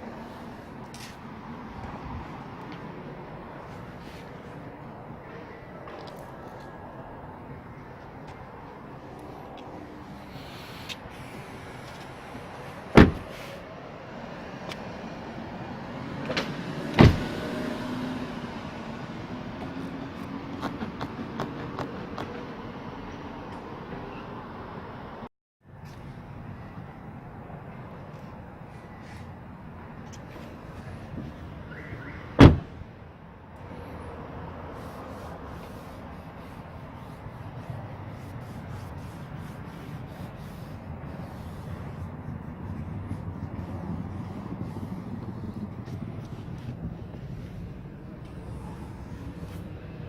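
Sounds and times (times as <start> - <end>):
loud thump: 13.0 - 13.3, 17.0 - 17.4, 32.4 - 32.8
car power window running: 16.3 - 17.6
car engine low rumble: 25.7 - 50.0.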